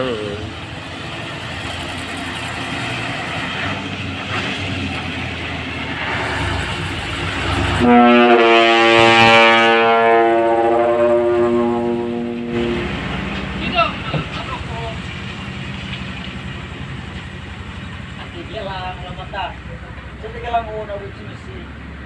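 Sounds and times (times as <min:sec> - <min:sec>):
truck engine and road noise: 0:00.0 - 0:22.0
truck horn chord: 0:07.8 - 0:13.0.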